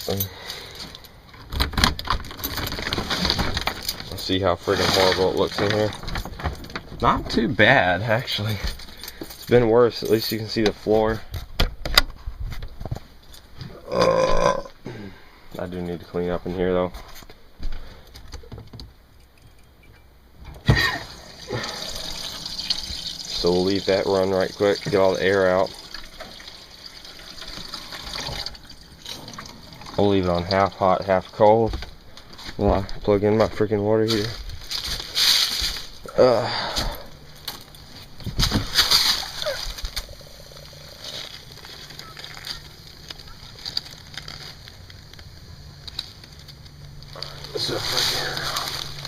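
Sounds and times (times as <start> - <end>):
water running from tap: 20.8 - 31.1.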